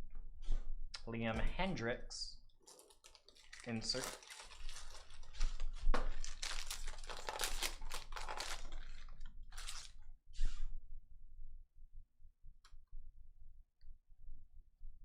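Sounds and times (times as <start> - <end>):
cards rustling: 2.6 - 9.9
foil wrapper crinkling and tearing: 2.6 - 10.0.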